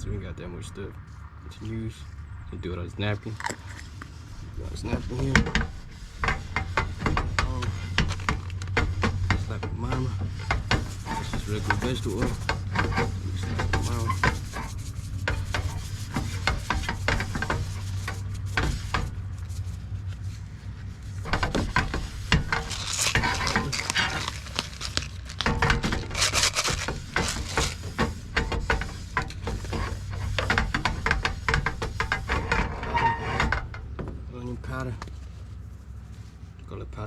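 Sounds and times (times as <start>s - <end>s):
hands rubbing fish on napkin: 13.4s - 30.1s.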